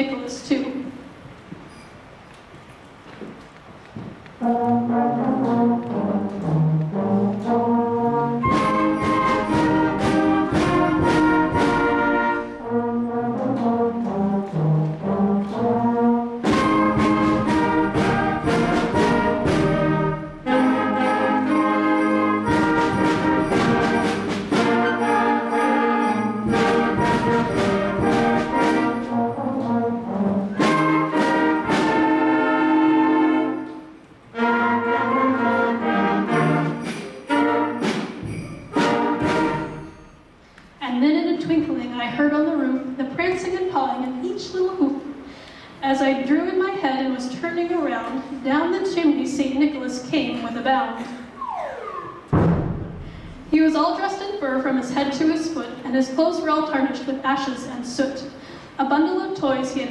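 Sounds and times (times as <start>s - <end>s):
concert band with brass chords: 4.3s - 40.8s, 51.0s - 53.6s.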